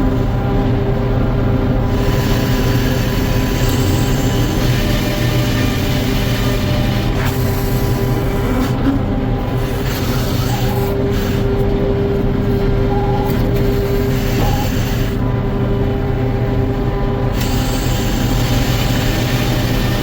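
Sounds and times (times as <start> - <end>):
sawmill mechanical drone: 0.0 - 20.0.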